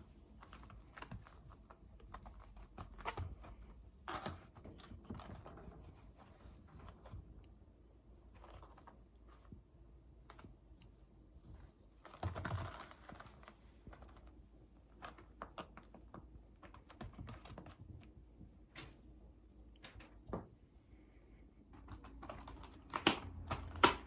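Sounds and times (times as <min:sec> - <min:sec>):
kitten scuffle: 0:00.0 - 0:07.4, 0:08.2 - 0:20.3, 0:21.7 - 0:24.0
kitten playing clicks and taps: 0:11.9 - 0:18.2, 0:21.7 - 0:24.0.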